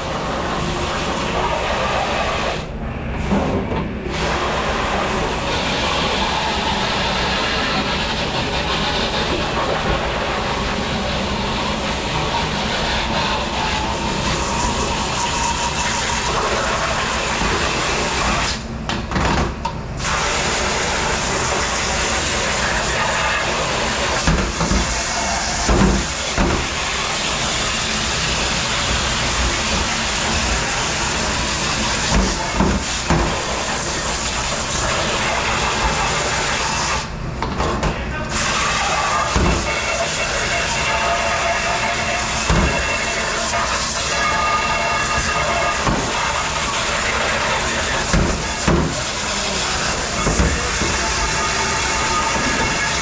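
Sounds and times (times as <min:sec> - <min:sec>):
dishwashing machinery running: 0:00.0 - 0:53.0
water spraying: 0:04.1 - 0:18.6, 0:20.0 - 0:37.1, 0:38.3 - 0:53.0
dishes knocking: 0:48.1 - 0:49.0, 0:50.2 - 0:51.1.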